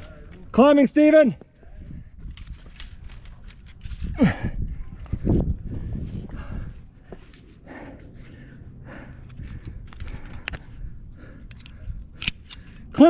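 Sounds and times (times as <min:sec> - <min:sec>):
climber breathing in short puffs: 0:03.8 - 0:12.9.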